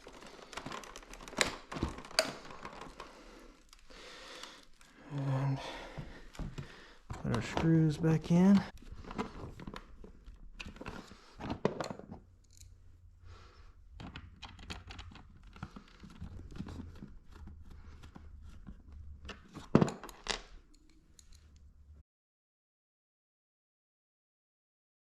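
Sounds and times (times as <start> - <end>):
screwdriver turning and clicking: 0.0 - 3.0, 11.8 - 12.8
plastic parts being handled: 0.0 - 5.2, 6.0 - 12.8.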